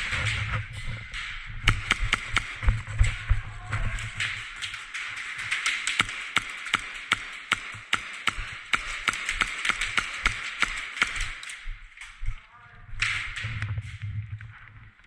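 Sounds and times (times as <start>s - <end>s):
airsoft guns firing: 1.6s - 11.6s.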